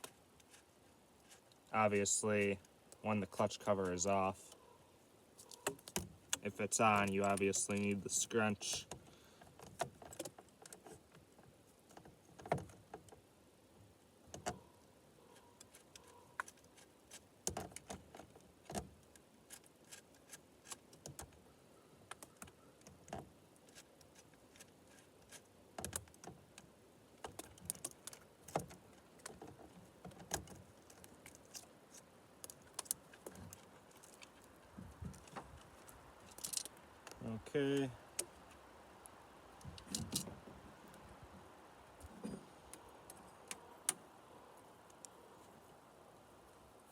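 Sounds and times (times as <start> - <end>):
chainsaw chain clicking and clinking: 36.2 - 36.7.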